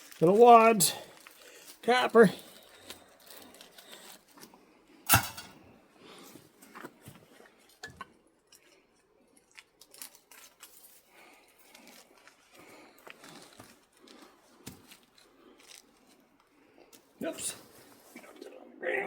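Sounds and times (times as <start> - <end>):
wire crinkling and rustling: 0.0 - 4.6, 8.5 - 17.1
sharp metallic knock: 5.1 - 5.5.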